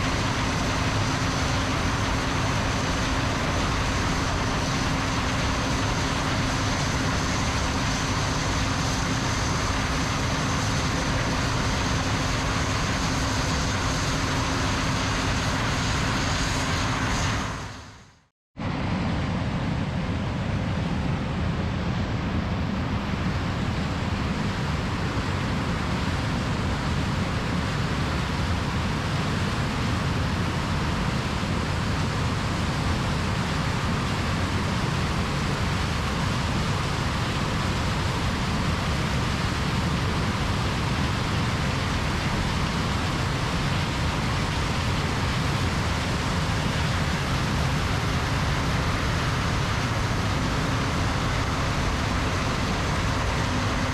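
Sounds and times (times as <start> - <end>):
harvester engine drone: 0.0 - 53.9
even rushing noise: 37.0 - 53.9.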